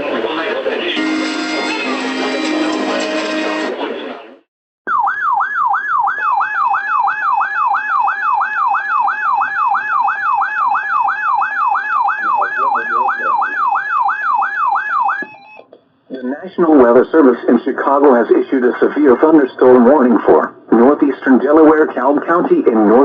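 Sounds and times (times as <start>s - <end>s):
sweeping emergency alert tone: 1.0s - 3.8s, 4.9s - 15.7s.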